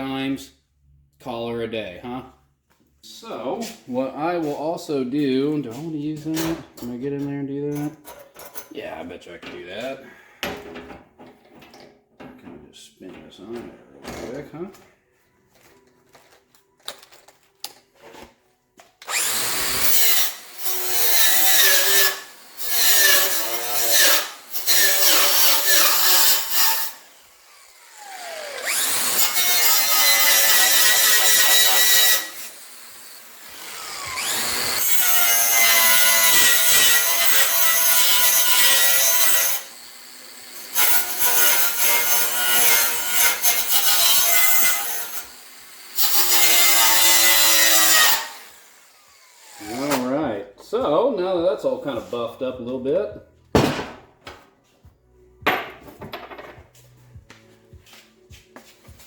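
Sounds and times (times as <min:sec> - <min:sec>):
angle grinder on steel: 0:19.0 - 0:50.1.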